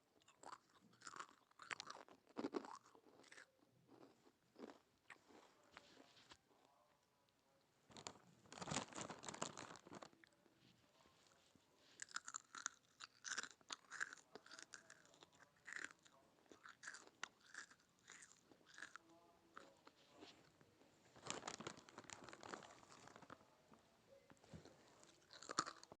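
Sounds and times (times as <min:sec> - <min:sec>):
chips crunching while chewing: 0:00.3 - 0:05.4, 0:12.0 - 0:19.0, 0:25.2 - 0:26.0.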